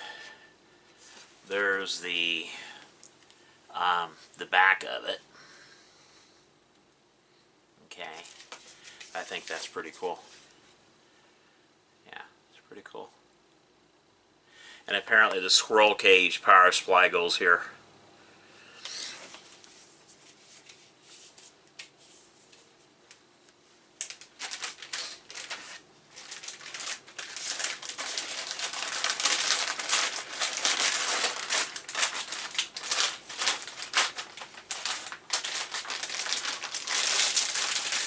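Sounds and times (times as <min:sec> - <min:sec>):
packaging crinkling and rustling: 0:08.1 - 0:09.8, 0:24.0 - 0:38.0.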